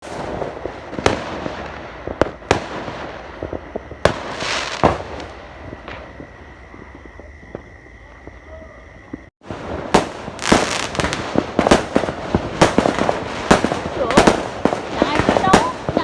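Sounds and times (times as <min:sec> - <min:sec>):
fireworks crackling: 0:00.0 - 0:16.0
fireworks sharp bangs: 0:00.0 - 0:16.0.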